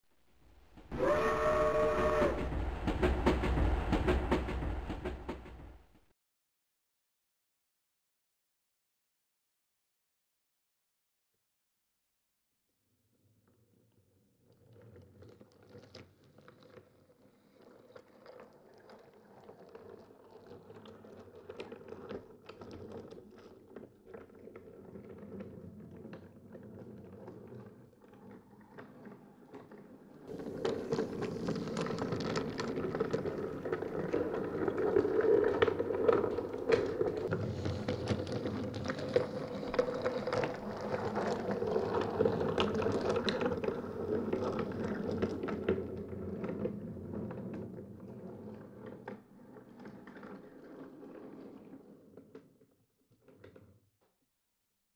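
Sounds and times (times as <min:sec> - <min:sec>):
wooden toy train rattling on track: 0:00.8 - 0:05.6, 0:17.6 - 0:52.2.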